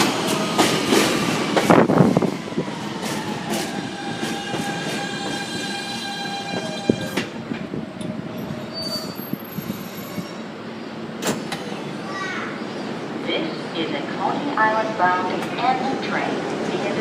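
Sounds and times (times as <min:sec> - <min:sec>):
train cars rumbling: 0:00.0 - 0:17.0
train brakes squealing: 0:03.0 - 0:07.2, 0:08.3 - 0:11.8.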